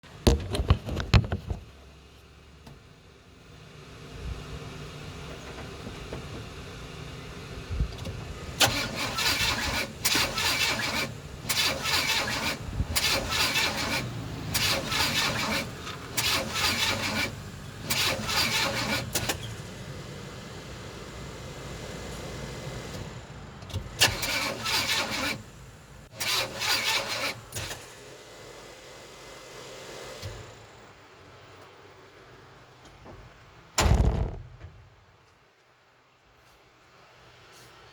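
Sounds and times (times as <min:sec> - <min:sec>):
car engine cranking: 0:03.7 - 0:28.0.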